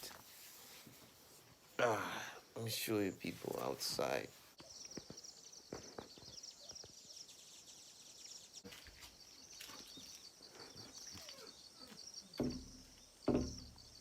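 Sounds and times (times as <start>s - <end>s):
loud thump: 12.4s - 13.8s
soft knocks: 12.4s - 13.8s.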